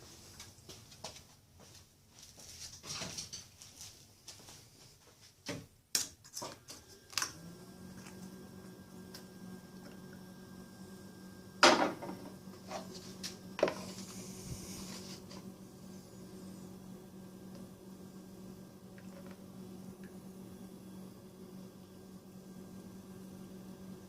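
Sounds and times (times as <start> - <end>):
steady low hum: 7.0 - 24.0.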